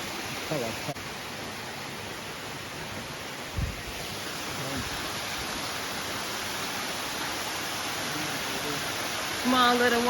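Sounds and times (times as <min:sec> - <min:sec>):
waterfall rushing: 0:00.0 - 0:10.0
low thump: 0:03.5 - 0:03.8.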